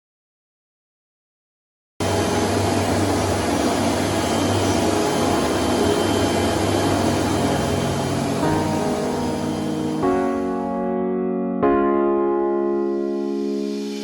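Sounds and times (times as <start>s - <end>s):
cnc router whirring: 2.0s - 10.0s
low hum: 2.0s - 10.6s.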